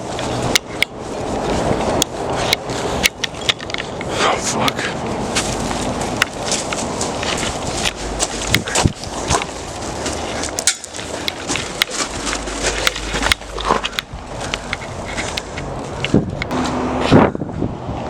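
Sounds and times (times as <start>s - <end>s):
handheld camera rustling: 0.0s - 16.6s
footsteps crunching on loose ground: 0.0s - 17.3s
sharp clicks and knocks: 1.7s - 4.8s, 5.4s - 16.6s.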